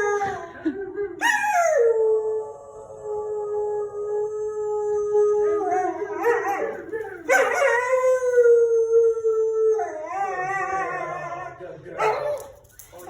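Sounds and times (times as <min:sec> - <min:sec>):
dog howling: 0:01.2 - 0:12.5.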